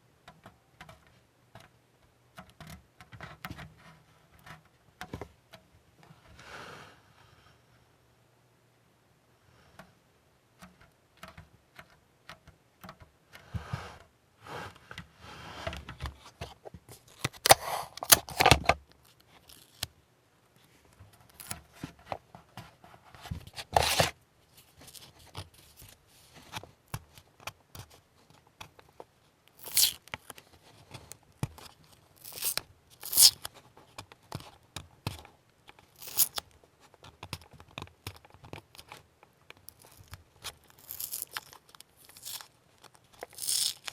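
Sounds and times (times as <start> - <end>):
light plastic clicks and scrapes: 0.2 - 6.2, 20.6 - 43.9
short tearing rasps: 29.6 - 30.0, 32.2 - 33.5, 36.0 - 36.4, 39.7 - 43.9.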